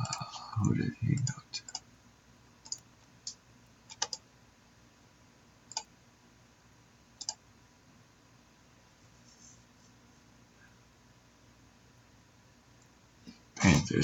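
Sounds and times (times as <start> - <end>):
computer mouse clicking: 0.0 - 1.9, 2.6 - 4.3, 5.7 - 5.9, 7.2 - 7.4
low room noise: 0.0 - 14.0.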